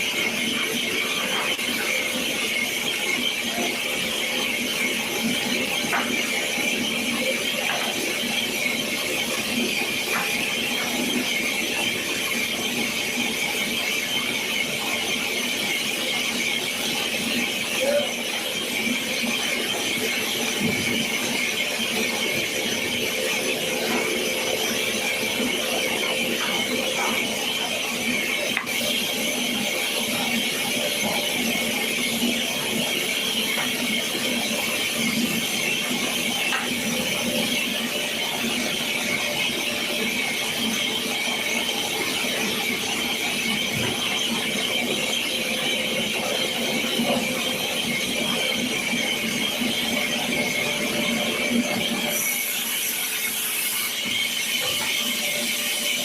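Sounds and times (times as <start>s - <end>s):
saw blade cutting log: 52.1s - 56.0s.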